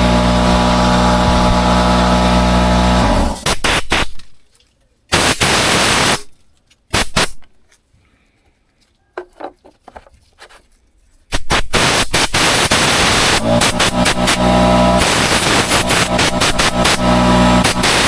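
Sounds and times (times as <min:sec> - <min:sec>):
rushing hiss-like noise bursts: 0:03.4 - 0:04.2, 0:05.1 - 0:06.3, 0:06.9 - 0:07.4, 0:11.3 - 0:18.0.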